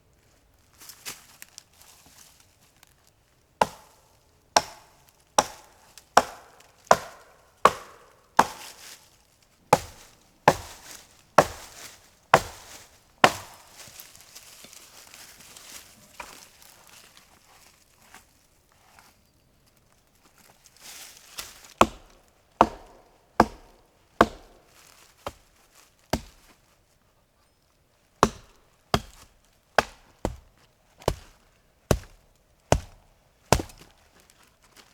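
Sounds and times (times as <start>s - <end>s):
hand tool chopping blows: 3.6s - 4.0s, 4.6s - 8.8s, 9.8s - 13.9s, 21.8s - 24.7s, 26.2s - 26.4s, 28.2s - 33.9s
soft rustling: 8.6s - 21.8s.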